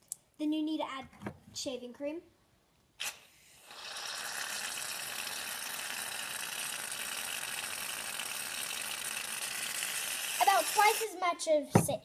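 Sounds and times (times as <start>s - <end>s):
aerosol can hissing: 3.0s - 11.2s.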